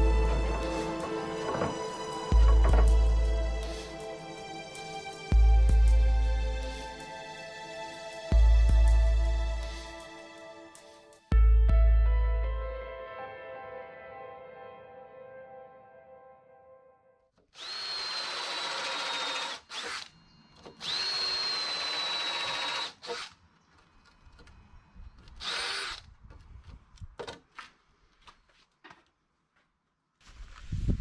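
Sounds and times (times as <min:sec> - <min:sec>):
electric drill whining: 0:17.6 - 0:23.4, 0:25.2 - 0:26.1.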